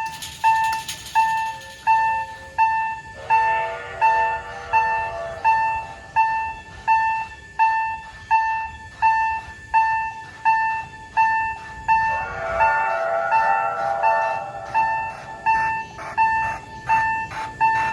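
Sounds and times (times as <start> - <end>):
ringing tones: 0.0 - 5.8
railway crossing warning bell: 0.0 - 17.9.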